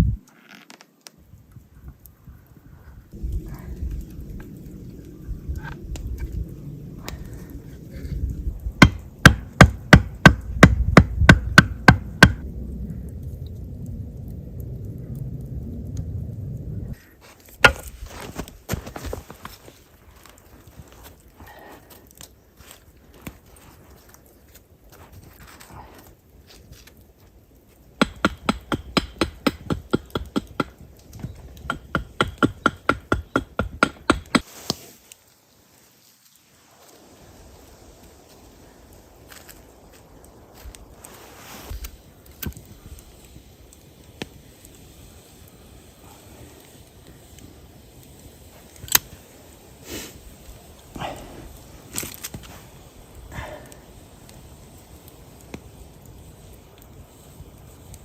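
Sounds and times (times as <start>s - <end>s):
tool striking wood: 8.8s - 12.4s, 17.6s - 17.9s
rapid hammering: 28.0s - 30.8s, 31.6s - 34.4s.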